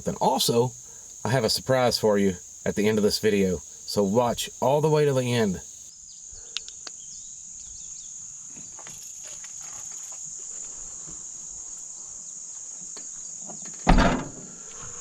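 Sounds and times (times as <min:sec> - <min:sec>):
insect chorus drone: 0:00.0 - 0:15.0
faint rustles and clicks: 0:08.6 - 0:11.2
loud thump with rustling: 0:13.8 - 0:14.4.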